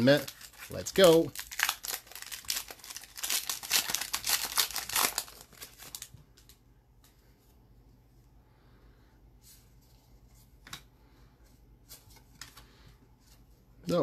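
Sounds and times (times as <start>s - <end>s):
plastic wrapper crinkling: 0.0s - 6.6s.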